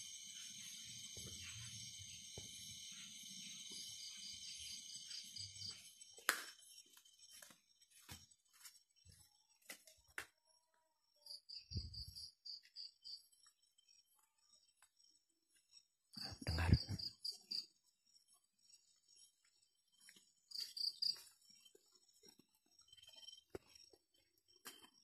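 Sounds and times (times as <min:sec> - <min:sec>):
crickets trilling: 0:00.0 - 0:25.0.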